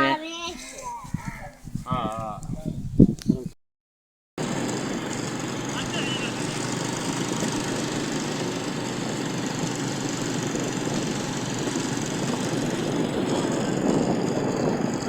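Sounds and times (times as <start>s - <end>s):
engine running: 4.4s - 15.0s.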